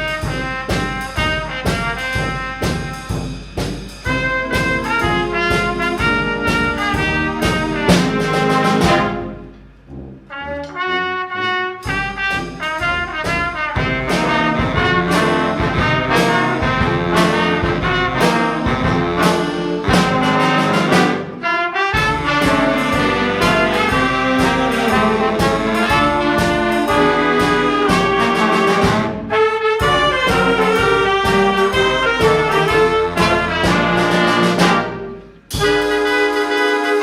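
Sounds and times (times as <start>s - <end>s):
brass band playing: 0.0s - 37.0s.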